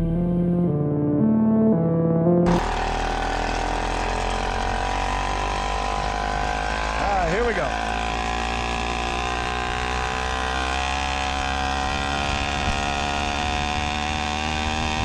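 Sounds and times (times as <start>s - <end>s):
small motor engine running: 2.5s - 15.0s.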